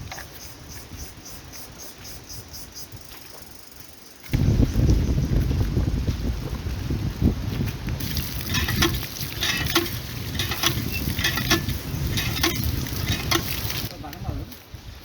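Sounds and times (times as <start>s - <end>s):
spoon stirring and scraping: 8.0s - 13.9s.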